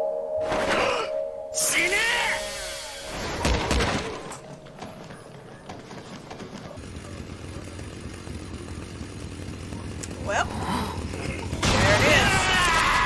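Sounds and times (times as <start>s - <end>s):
scattered clicks: 9.6s - 10.2s.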